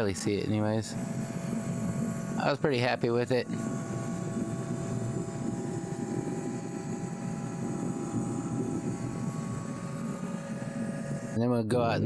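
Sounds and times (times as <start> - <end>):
faint hum tones: 0.0 - 12.0.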